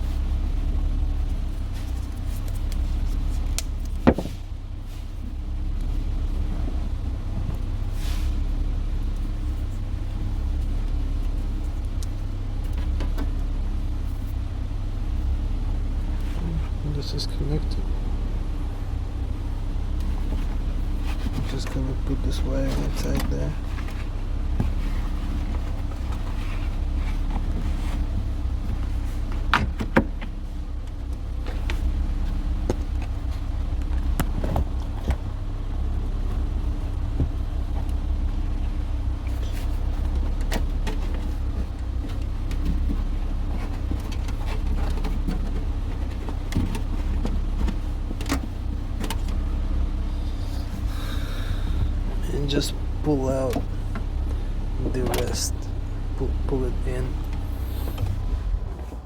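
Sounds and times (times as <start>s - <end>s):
car engine idling: 0.0s - 59.0s
steady low rumble: 0.0s - 59.0s.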